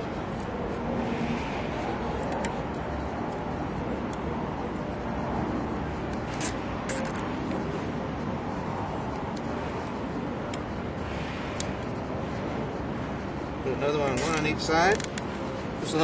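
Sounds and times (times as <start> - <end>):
steady background noise: 0.0 - 16.0
zip tie ratcheting clicks: 6.1 - 7.6, 14.0 - 15.3.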